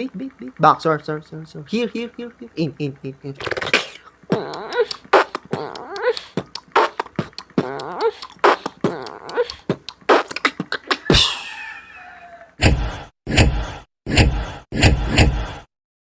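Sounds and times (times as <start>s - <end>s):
person beatboxing: 3.2s - 11.4s.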